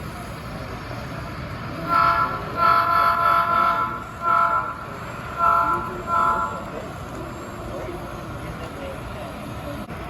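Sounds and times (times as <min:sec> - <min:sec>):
model train electronic horn: 0:01.8 - 0:06.7.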